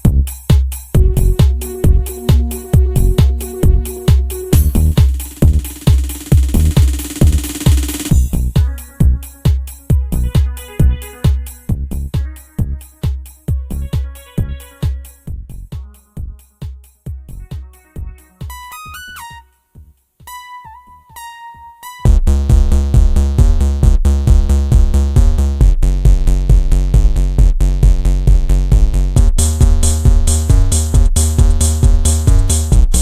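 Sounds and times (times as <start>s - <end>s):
electronic track with drum-machine beat: 0.0s - 33.0s
held synth notes: 1.0s - 8.0s, 8.6s - 13.0s.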